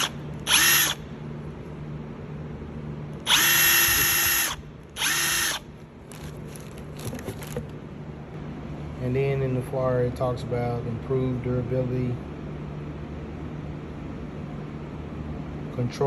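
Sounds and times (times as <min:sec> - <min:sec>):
impact wrench motor whining: 0:00.0 - 0:01.0, 0:03.2 - 0:07.7.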